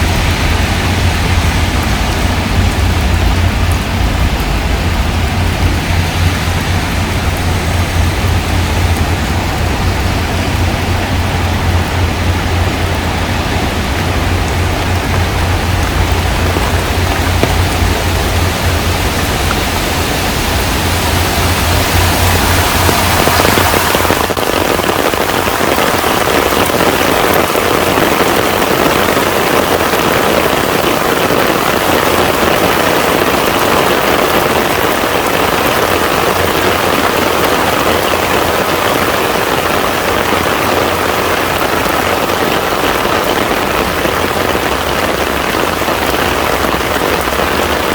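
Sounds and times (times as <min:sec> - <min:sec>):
low rumble: 0:00.0 - 0:26.8
heavy rain on a pond: 0:00.0 - 0:47.9.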